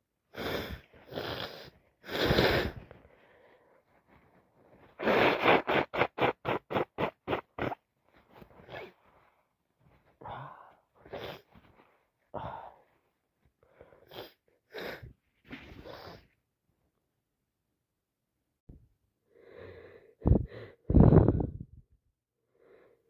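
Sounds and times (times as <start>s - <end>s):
quiet sniffs and breaths: 0.3s - 6.3s, 8.0s - 16.4s
woman's nasal bursts: 0.4s - 2.8s, 5.0s - 7.8s.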